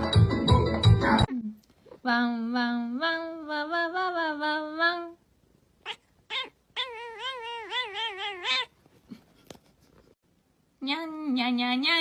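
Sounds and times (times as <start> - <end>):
cat yowling: 5.8 - 8.8.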